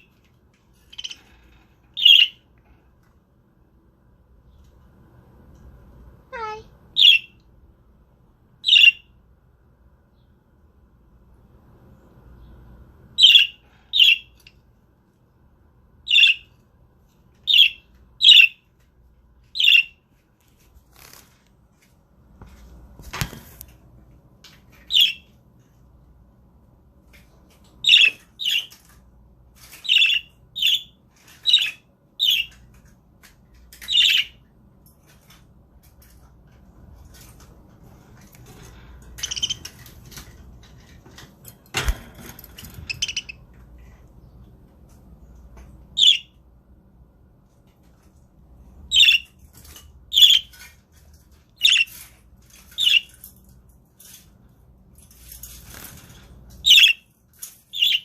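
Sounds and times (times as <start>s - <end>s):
budgerigar chirping: 48.9s - 49.2s.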